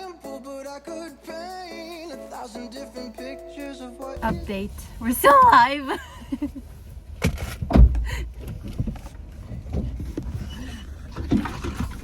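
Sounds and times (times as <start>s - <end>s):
low engine rumble: 4.0s - 12.0s
vehicle knocks and clunks: 4.2s - 5.7s, 6.6s - 12.0s.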